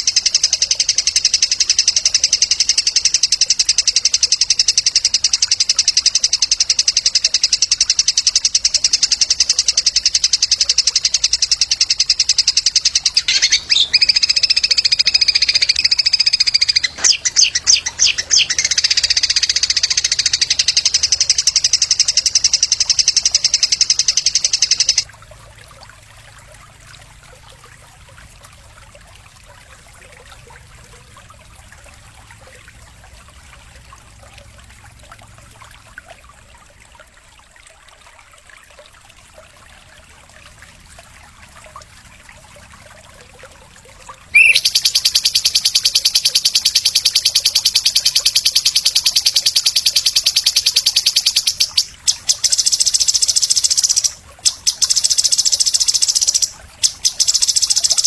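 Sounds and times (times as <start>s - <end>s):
songbird trilling and chipping: 0.0s - 25.0s, 44.3s - 58.0s.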